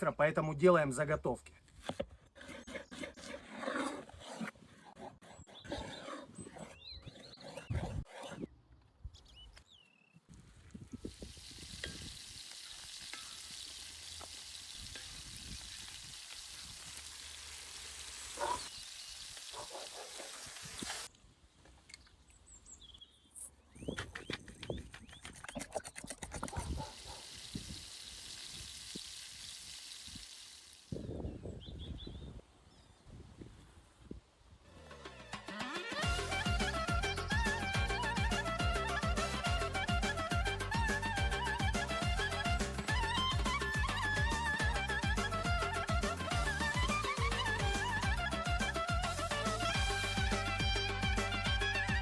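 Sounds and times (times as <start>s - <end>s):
food sizzling in a pan: 10.9s - 21.1s, 27.0s - 31.1s.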